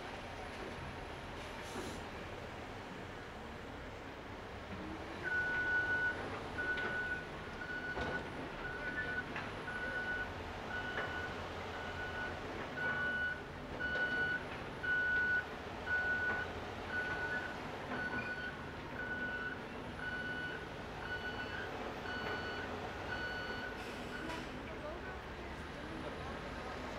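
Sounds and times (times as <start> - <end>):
reversing alarm beeping: 5.3 - 24.3.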